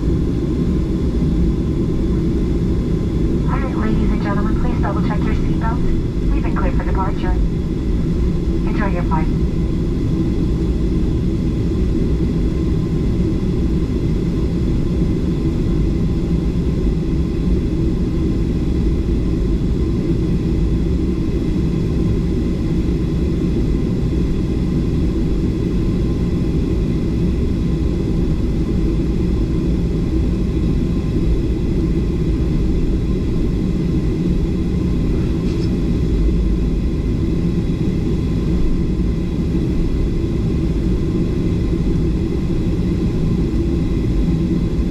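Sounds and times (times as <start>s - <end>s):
airliner cabin rumble: 0.0s - 44.9s
faint steady tones: 3.4s - 9.6s.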